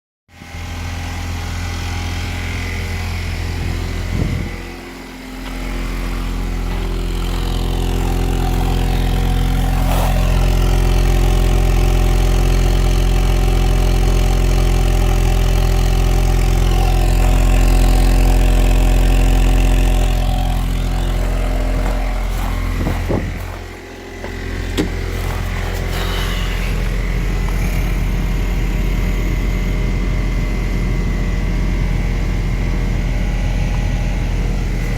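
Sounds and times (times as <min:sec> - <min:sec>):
car engine with rod knock: 0:21.7 - 0:27.9.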